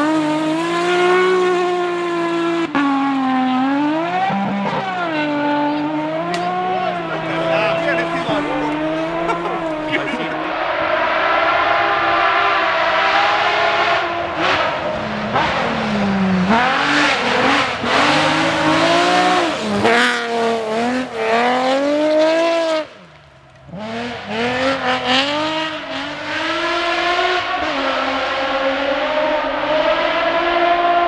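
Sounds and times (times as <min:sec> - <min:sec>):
rally car engine revving: 0:00.0 - 0:31.0.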